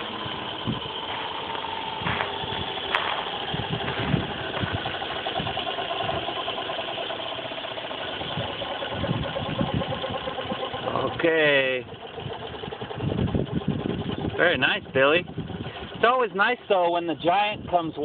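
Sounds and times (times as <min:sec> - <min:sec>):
low thumps: 0:00.0 - 0:06.4
model helicopter motor and rotor whine: 0:00.0 - 0:18.0.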